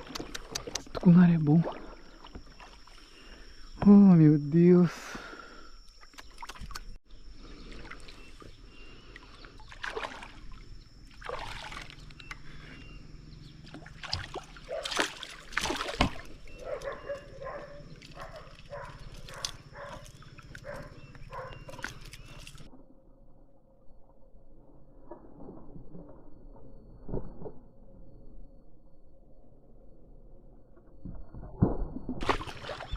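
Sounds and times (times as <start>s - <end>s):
water splashing against boat: 9.2s - 12.6s, 13.6s - 16.9s, 32.2s - 32.9s.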